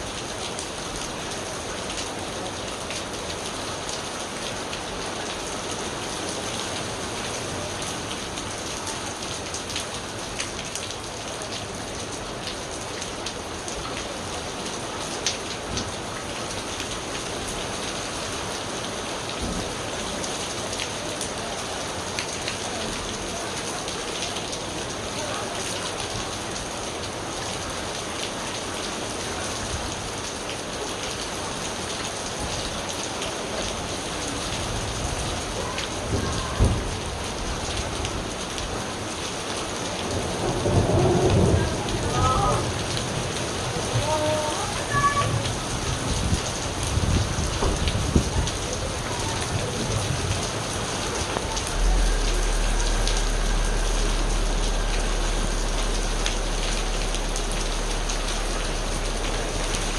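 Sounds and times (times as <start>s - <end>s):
steady rain hissing: 0.0s - 59.9s
sharp raindrop ticks: 39.6s - 59.9s.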